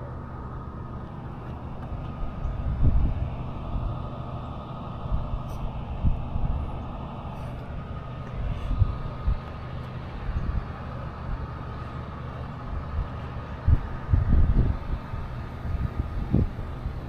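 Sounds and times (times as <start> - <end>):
wind buffeting microphone: 1.6 - 4.2, 4.9 - 7.0, 7.7 - 11.5, 12.6 - 17.0.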